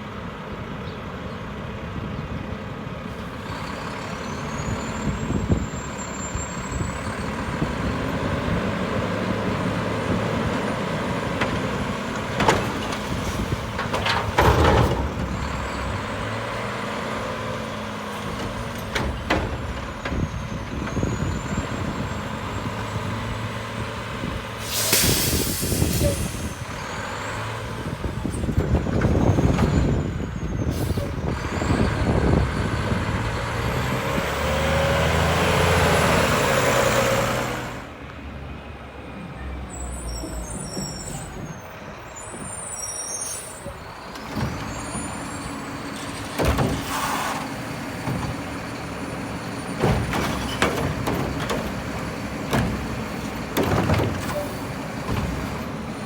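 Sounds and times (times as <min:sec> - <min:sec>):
diesel garbage truck running: 0:00.0 - 0:56.0
sharp air hisses: 0:24.6 - 0:26.6, 0:46.8 - 0:47.6
loud air rush: 0:24.6 - 0:26.7, 0:46.7 - 0:47.9.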